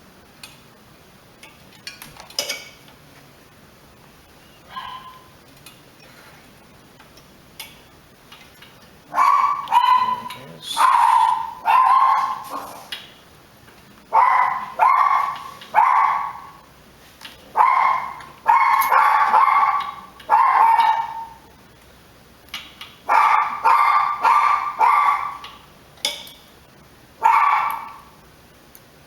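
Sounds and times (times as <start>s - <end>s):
dog barking: 4.7s - 5.3s, 9.1s - 12.9s, 14.1s - 16.6s, 17.5s - 21.5s, 23.1s - 25.4s, 27.2s - 28.1s.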